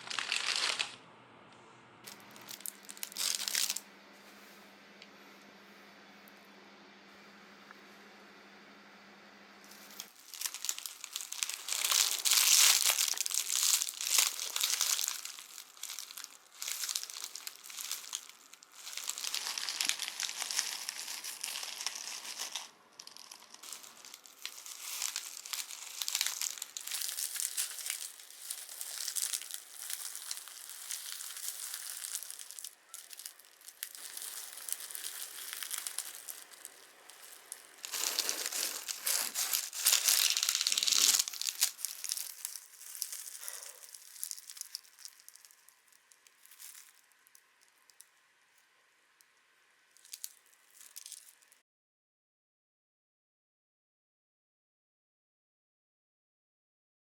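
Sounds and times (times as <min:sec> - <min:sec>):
bread crust crackling and crunching: 0:00.0 - 0:01.0, 0:02.1 - 0:03.8, 0:09.7 - 0:51.6.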